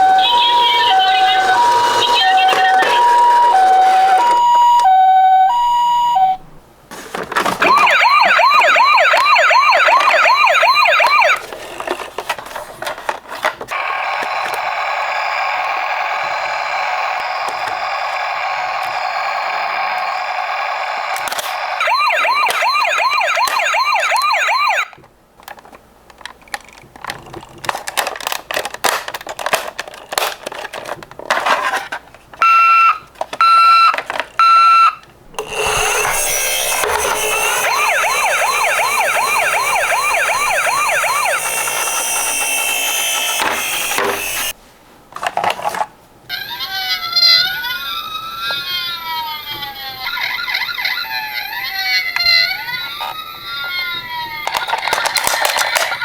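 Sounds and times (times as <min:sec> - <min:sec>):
toy electronic siren: 0:00.0 - 0:06.4, 0:07.6 - 0:12.0, 0:13.7 - 0:25.0, 0:32.4 - 0:44.6, 0:46.5 - 0:56.0
plastic toy clicks and rattles: 0:07.3 - 0:14.7, 0:21.1 - 0:23.7, 0:24.9 - 0:32.3, 0:35.4 - 0:44.6, 0:54.2 - 0:56.0.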